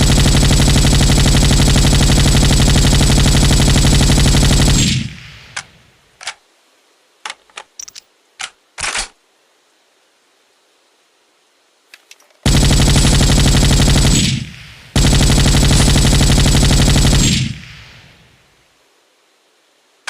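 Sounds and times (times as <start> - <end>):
machine gun burst: 0.0 - 5.7, 12.5 - 18.3.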